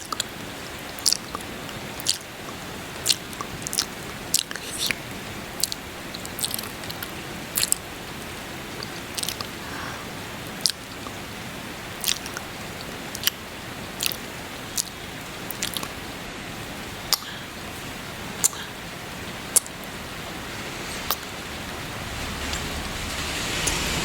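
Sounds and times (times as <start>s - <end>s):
rain hissing: 0.0s - 24.0s
wet lip smacks kissing: 3.0s - 5.0s, 12.0s - 12.5s, 14.8s - 16.0s, 17.1s - 17.5s, 18.4s - 18.8s, 19.6s - 19.9s, 21.1s - 21.3s.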